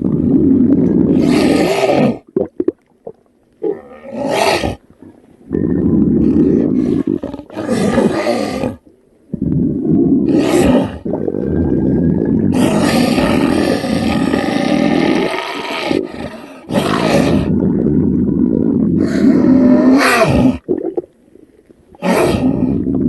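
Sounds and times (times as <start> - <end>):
crackling gurgles: 0.0 - 23.0
cartoon stomach rumbling: 5.5 - 7.5, 9.3 - 10.3, 11.0 - 15.4, 17.0 - 21.1, 22.3 - 23.0.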